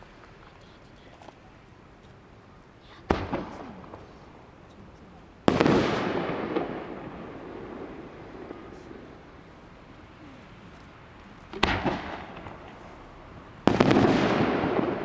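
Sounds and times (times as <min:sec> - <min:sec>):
fireworks bangs: 0:03.0 - 0:15.0
fireworks cracks: 0:03.0 - 0:15.0
rumbling echo: 0:05.5 - 0:10.2, 0:11.0 - 0:15.0.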